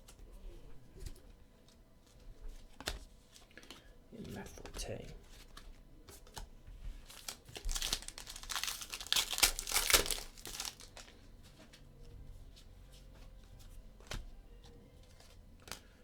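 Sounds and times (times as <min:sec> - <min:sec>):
cards being handled: 0:00.0 - 0:11.8, 0:12.5 - 0:16.0
foil wrapper tearing and crinkling: 0:07.0 - 0:11.1.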